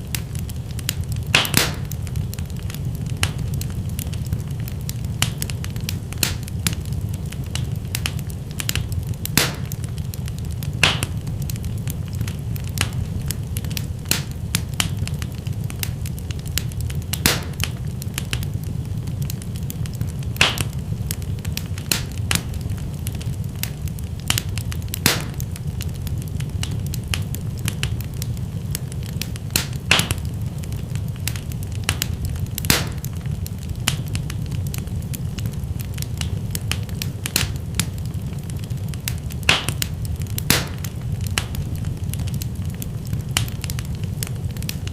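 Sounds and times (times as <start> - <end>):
low rumble of burning fire: 0.0 - 44.9
wood fire pops and snaps: 0.0 - 44.9.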